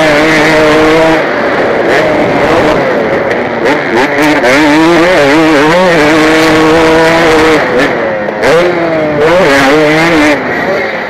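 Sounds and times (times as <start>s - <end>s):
motocross bike engine revving: 0.0s - 11.0s.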